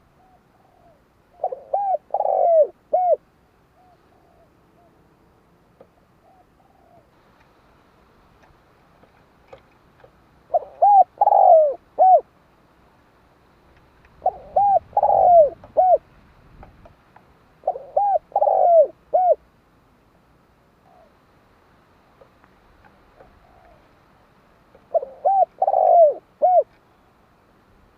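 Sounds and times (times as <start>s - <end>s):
dove cooing: 0.0s - 5.0s, 5.9s - 7.2s, 10.5s - 12.3s, 14.2s - 16.1s, 17.6s - 19.4s, 20.8s - 21.2s, 23.1s - 23.9s, 24.8s - 26.8s.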